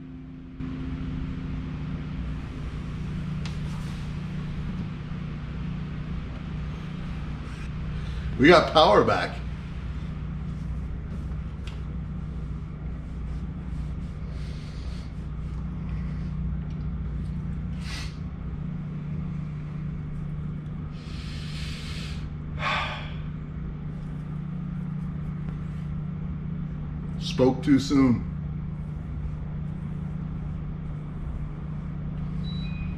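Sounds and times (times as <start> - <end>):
deep rumble: 0.0 - 27.4, 28.2 - 32.9
low hum: 0.0 - 32.9
short hissing rushes: 17.8 - 18.2, 21.0 - 23.3.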